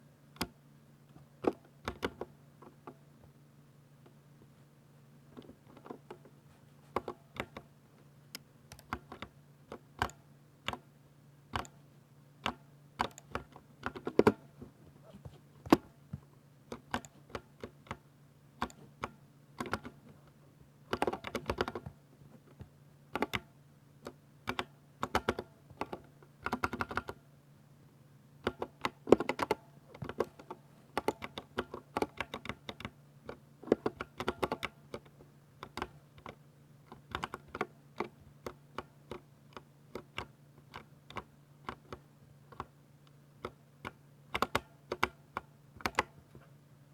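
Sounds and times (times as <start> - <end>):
mechanical keyboard typing: 16.7 - 18.0, 18.6 - 20.0, 20.9 - 22.0, 22.6 - 27.2, 28.4 - 42.7, 43.4 - 45.2, 45.8 - 46.1.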